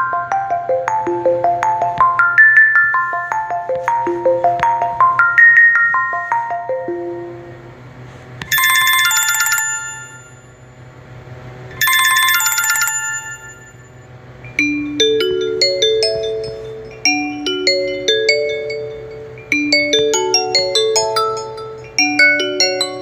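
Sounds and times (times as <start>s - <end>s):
phone ringtone short notes: 8.5s - 10.6s, 11.8s - 14.1s
trilling telephone ring: 8.5s - 10.6s, 11.8s - 14.1s.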